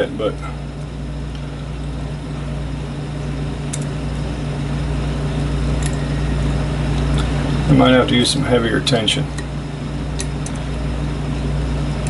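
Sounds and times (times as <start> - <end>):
low machine hum: 0.0 - 12.0.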